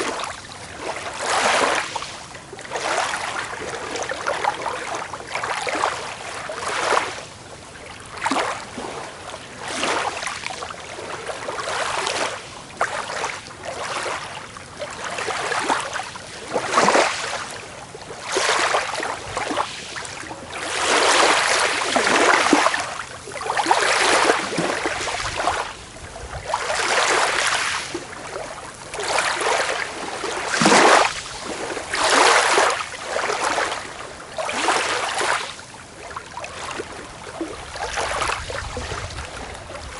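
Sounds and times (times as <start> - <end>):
small waves lapping on a beach: 0.0 - 39.9.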